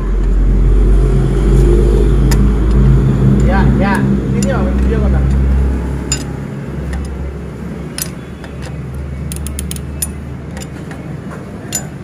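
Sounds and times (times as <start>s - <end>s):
metallic tool clicks: 4.3s - 7.2s, 7.9s - 12.0s.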